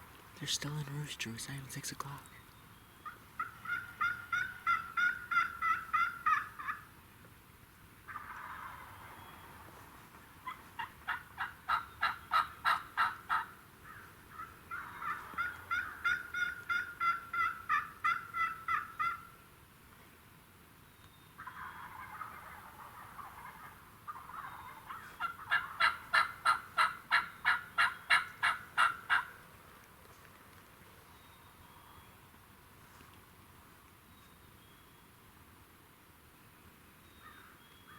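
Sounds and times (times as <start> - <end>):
turkey yelps: 3.0 - 6.8, 8.1 - 9.2, 10.4 - 19.3, 21.4 - 29.4.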